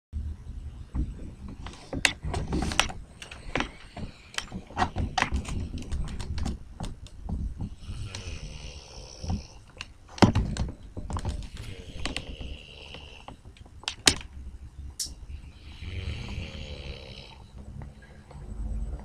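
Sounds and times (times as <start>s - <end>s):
sharp clicks and knocks: 0.9s - 8.4s, 9.2s - 14.4s
man snoring: 7.8s - 9.6s, 11.5s - 13.3s, 15.6s - 17.6s.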